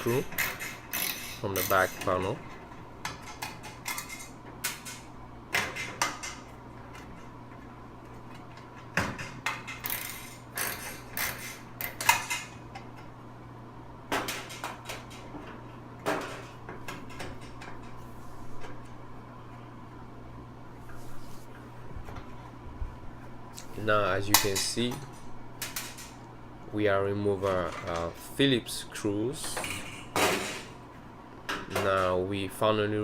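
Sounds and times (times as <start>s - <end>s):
steady low hum: 0.0s - 33.0s
ratchet clicking on metal: 0.4s - 2.0s.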